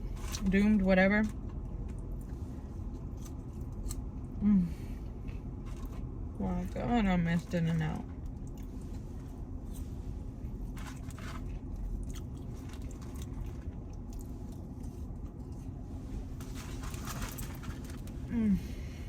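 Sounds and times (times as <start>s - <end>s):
low hum: 0.0s - 19.0s
chewing and biting food: 1.4s - 4.3s, 8.1s - 15.8s.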